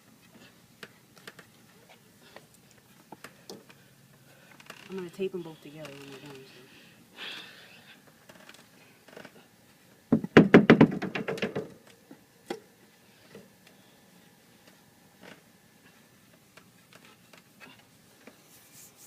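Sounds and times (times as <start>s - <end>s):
hard objects knocking and rattling: 10.1s - 11.8s.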